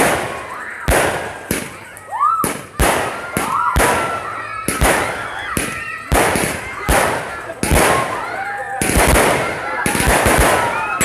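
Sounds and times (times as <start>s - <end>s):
firework whistles: 0.0s - 11.0s
fireworks bangs: 0.0s - 11.0s.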